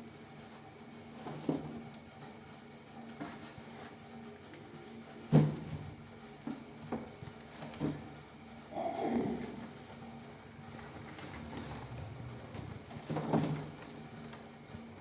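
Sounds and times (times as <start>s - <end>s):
faint steady hum: 7.6s - 15.0s.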